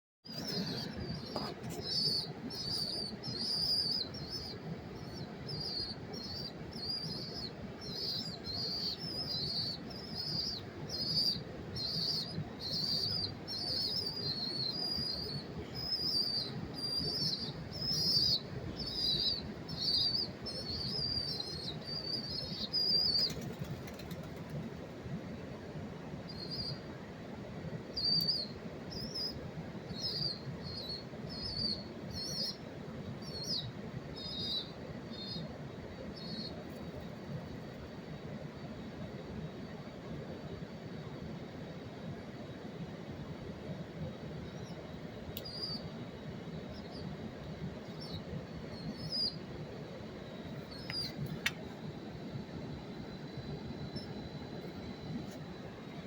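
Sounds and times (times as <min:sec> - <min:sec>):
pigeon chicks peeping: 0:00.4 - 0:24.6, 0:50.6 - 0:52.1.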